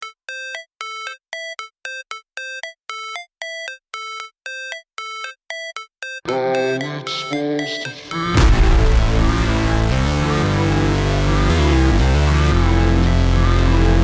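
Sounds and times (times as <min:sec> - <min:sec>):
electronic music: 0:05.2 - 0:14.0
short synthesized notes: 0:08.2 - 0:14.0.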